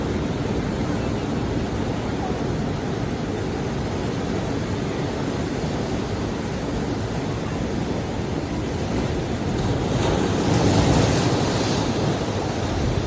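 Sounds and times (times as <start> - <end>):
surf breaking on beach: 0.0 - 13.0
wind buffeting microphone: 8.4 - 13.0.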